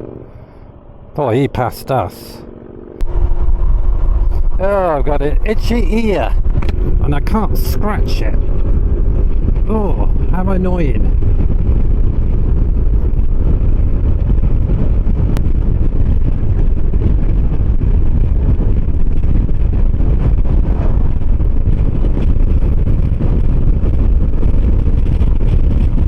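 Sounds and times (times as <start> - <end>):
wind rushing over microphone: 0.0 - 26.0
motor scooter running: 5.4 - 26.0.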